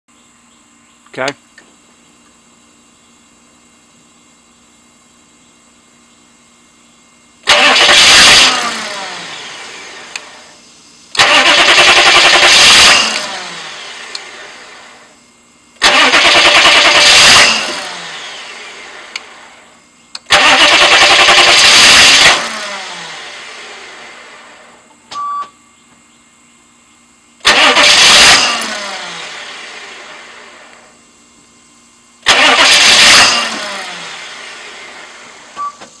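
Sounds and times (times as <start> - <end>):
car engine cranking: 7.4 - 10.4, 11.1 - 14.6, 15.8 - 19.4, 20.2 - 23.8, 27.4 - 30.1, 32.2 - 35.6
short beep: 25.1 - 25.6.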